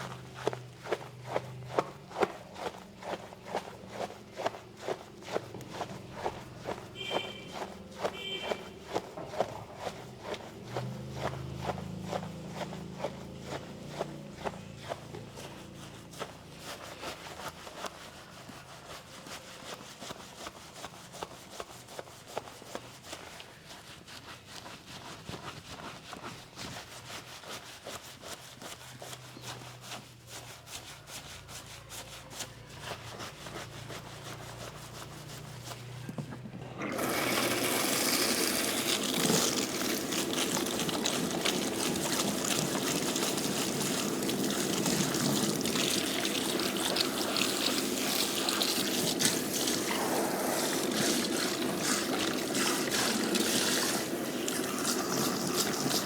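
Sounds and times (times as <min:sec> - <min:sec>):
running water rinsing hair: 0:00.0 - 0:15.0, 0:36.5 - 0:56.0
hands rubbing a head: 0:00.0 - 0:56.0.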